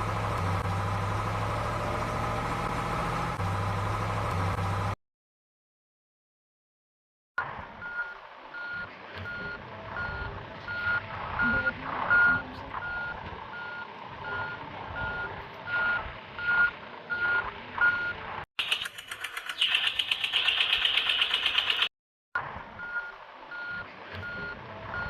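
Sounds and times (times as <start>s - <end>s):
vehicle rumbling: 0.0s - 5.0s, 7.4s - 25.0s
reversing alarm beeping: 7.8s - 18.2s, 22.8s - 25.0s
rapid clicking: 18.6s - 21.9s.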